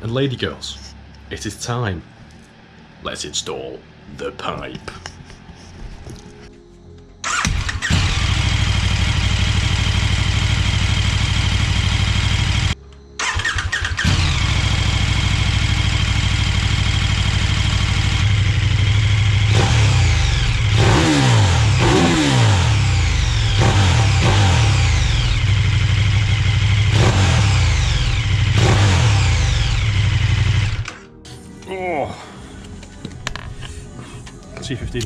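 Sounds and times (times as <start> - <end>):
motorcycle engine idling and revving: 7.3 - 30.9.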